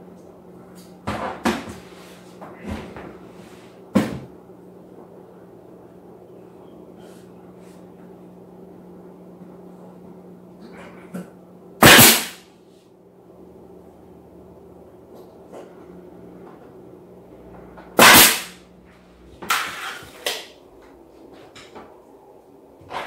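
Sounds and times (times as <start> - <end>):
steady low hum: 0.0 - 23.0
bang or clatter: 11.8 - 12.4, 18.0 - 18.6.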